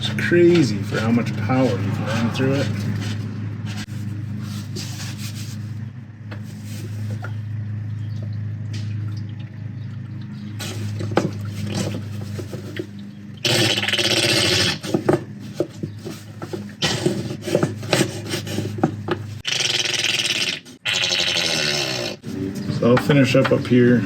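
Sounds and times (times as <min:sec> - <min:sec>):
steady low hum: 0:00.0 - 0:13.8.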